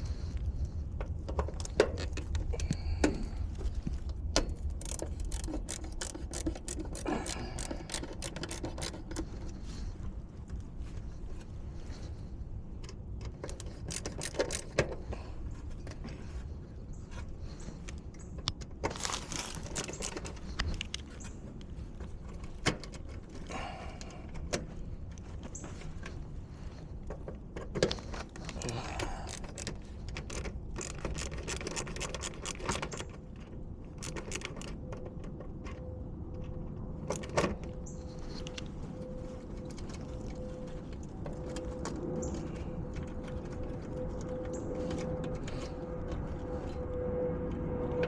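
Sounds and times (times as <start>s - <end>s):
steady low rumble: 0.0s - 48.0s
sharp clicks: 4.4s - 9.6s, 12.8s - 15.1s, 28.4s - 33.2s.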